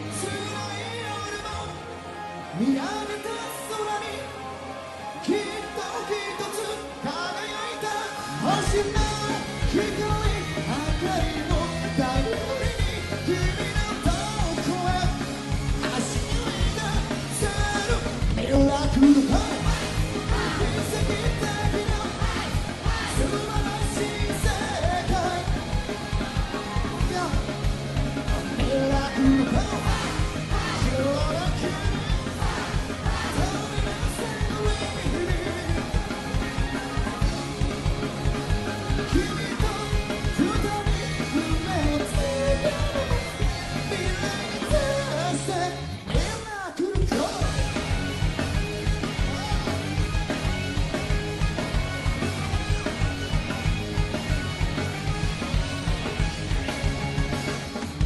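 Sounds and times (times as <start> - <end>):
rock pop song with drums: 0.0 - 1.8, 5.2 - 58.0
person singing: 38.3 - 47.5.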